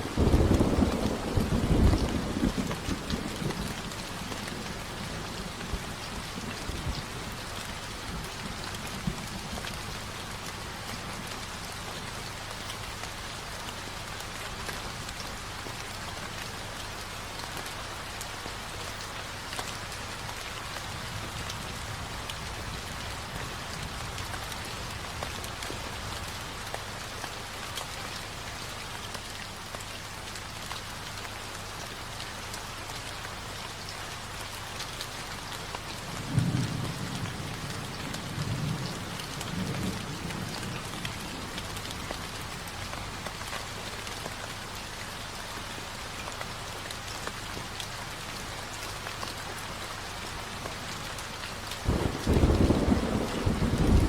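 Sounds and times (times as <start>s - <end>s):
low rumble of thunder: 0.0s - 12.2s, 35.9s - 43.8s, 51.8s - 54.0s
heavy rain: 0.0s - 54.0s.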